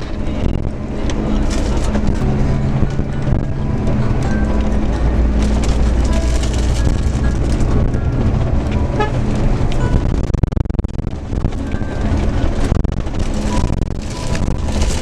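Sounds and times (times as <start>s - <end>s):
background music: 0.0s - 10.2s
road noise: 0.0s - 15.0s
vehicle engine: 0.0s - 15.0s.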